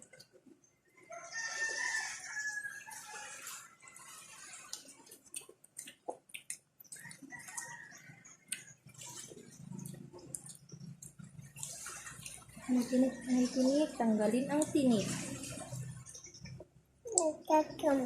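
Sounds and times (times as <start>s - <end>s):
rooster crowing: 1.0s - 3.4s.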